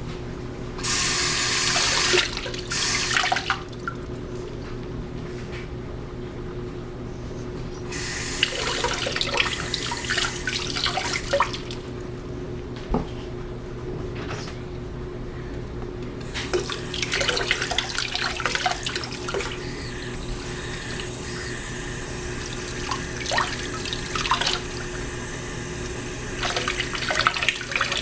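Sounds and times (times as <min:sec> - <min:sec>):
faint steady hum: 0:00.0 - 0:28.0
tap water splashing: 0:16.3 - 0:19.8, 0:22.4 - 0:25.0, 0:26.4 - 0:28.0.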